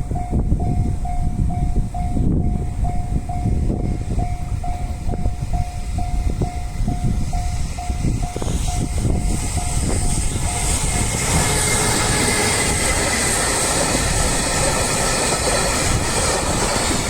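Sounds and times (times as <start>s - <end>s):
level crossing warning bell ringing: 0.0s - 17.0s
train rumbling past: 0.0s - 17.0s
hiss: 7.2s - 17.0s.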